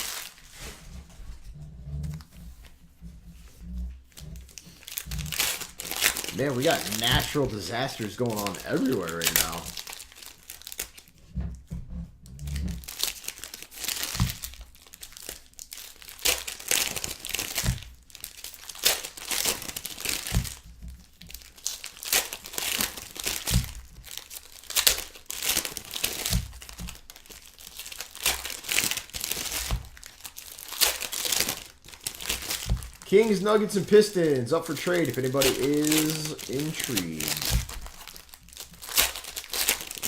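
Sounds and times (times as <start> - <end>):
card pack wrappers crinkling: 0.0 - 0.5, 4.5 - 11.1, 12.8 - 20.3, 21.3 - 40.0
cards handled: 6.3 - 9.7, 33.2 - 37.8.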